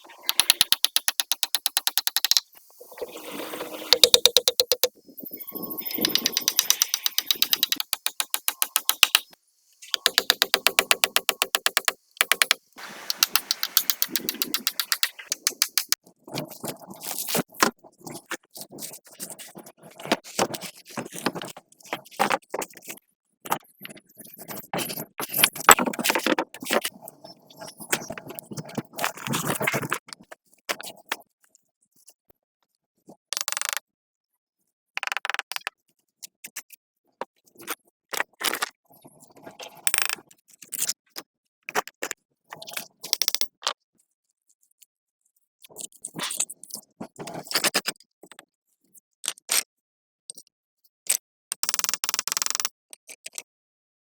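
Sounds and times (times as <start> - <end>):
scraping and rubbing strokes: 2.6 - 16.0.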